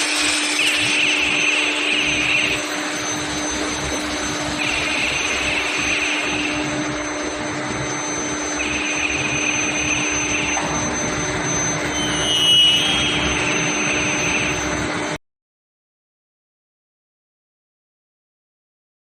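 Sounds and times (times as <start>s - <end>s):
high-pitched machine whine: 0.0s - 15.2s
machine hum and hiss: 0.0s - 15.2s.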